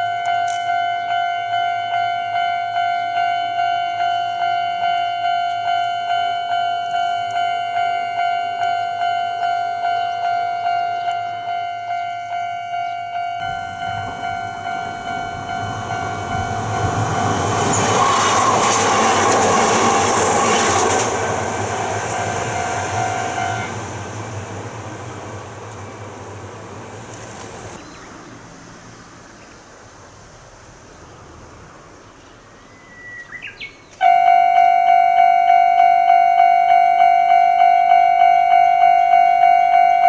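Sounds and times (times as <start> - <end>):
level crossing alarm pulsing: 0.0 - 24.0, 34.0 - 40.0
train passing: 0.0 - 40.0.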